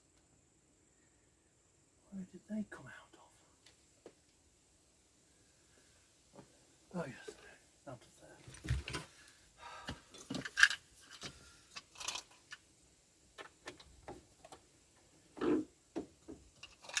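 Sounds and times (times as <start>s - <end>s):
small parts clicking and tapping: 10.1s - 12.7s, 16.0s - 17.0s.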